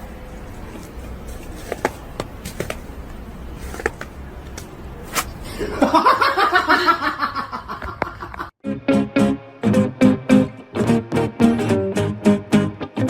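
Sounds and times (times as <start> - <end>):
person laughing loudly: 5.5 - 8.5.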